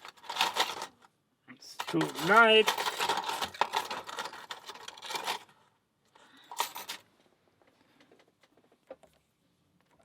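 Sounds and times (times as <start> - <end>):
lockpicks rattling in lock: 1.8 - 5.4.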